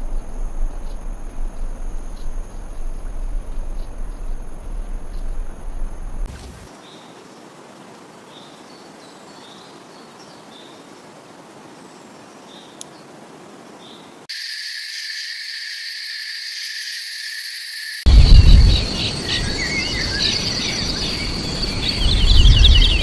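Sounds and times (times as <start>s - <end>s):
insects buzzing chorus: 0.0s - 6.7s, 14.3s - 23.0s
high bird chirps: 18.1s - 23.0s.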